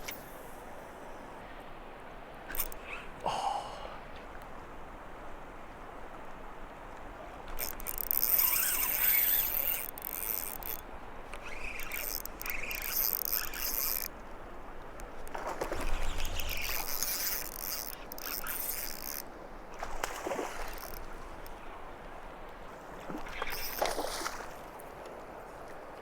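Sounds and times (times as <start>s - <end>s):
fishing reel whirring: 0.0s - 1.3s, 2.5s - 3.3s, 7.5s - 14.2s, 15.0s - 21.6s, 23.2s - 24.4s.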